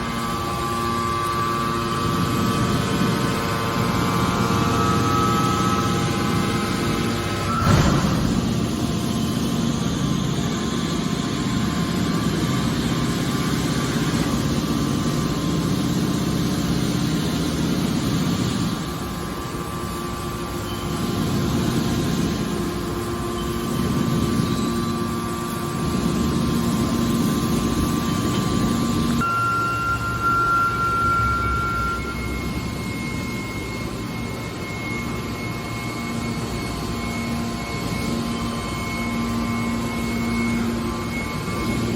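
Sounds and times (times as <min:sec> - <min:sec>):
metal baler running: 0:00.0 - 0:19.4.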